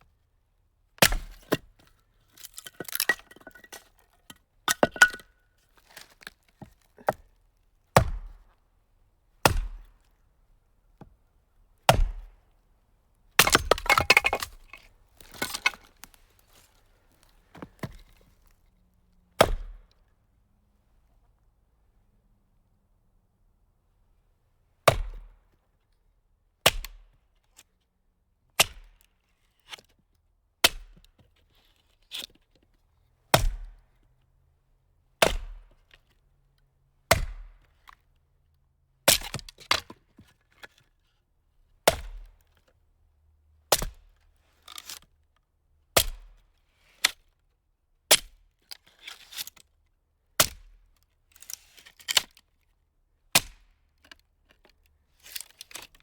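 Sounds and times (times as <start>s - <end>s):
axe blows splitting firewood: 1.0s - 1.6s, 9.4s - 9.9s, 11.9s - 12.3s, 13.4s - 16.1s, 39.1s - 39.9s.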